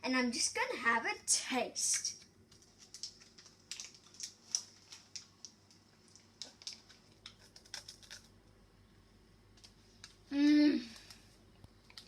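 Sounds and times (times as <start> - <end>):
person chewing crunchy snack: 6.1 - 8.4.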